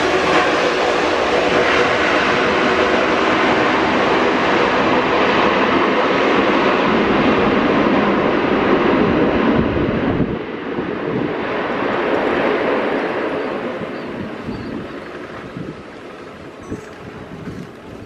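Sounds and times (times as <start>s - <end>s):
jet airliner engines roaring: 0.0s - 18.0s
wind buffeting microphone: 0.0s - 18.0s.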